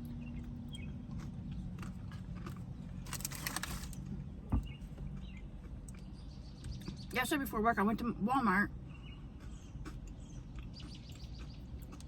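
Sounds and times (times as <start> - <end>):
chewing clicks: 0.0 - 3.7, 5.0 - 7.2, 9.4 - 12.0
crisp crunching: 1.1 - 4.1.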